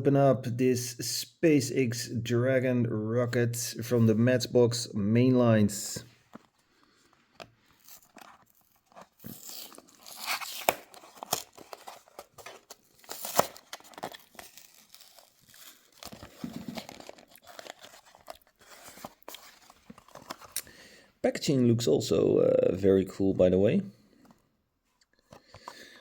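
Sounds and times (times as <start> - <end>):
plastic crinkling: 6.2 - 20.7
cardboard tearing: 7.7 - 20.6.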